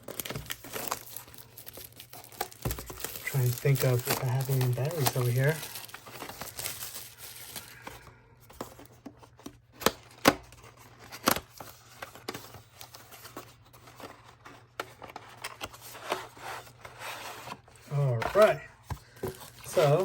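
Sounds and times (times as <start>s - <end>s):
hands rummaging through objects: 0.0s - 9.1s, 18.1s - 20.0s.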